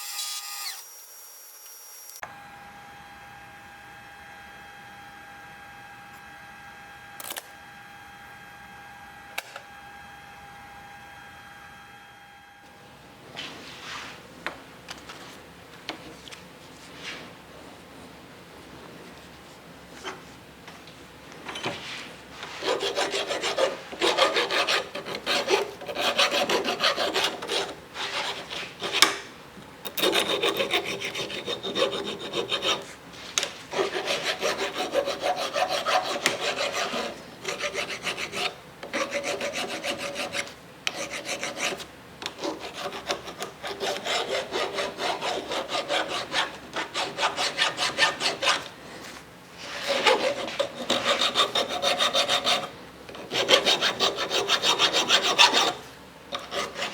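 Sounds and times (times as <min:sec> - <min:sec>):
hand tool rasping on metal: 0:22.6 - 0:29.1, 0:30.0 - 0:32.9, 0:33.7 - 0:41.8, 0:42.4 - 0:48.7, 0:49.7 - 0:56.9.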